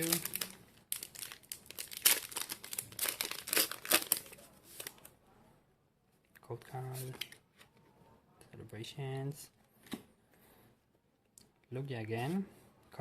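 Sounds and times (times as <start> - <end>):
foil wrapper tearing and crinkling: 0.0 - 4.4.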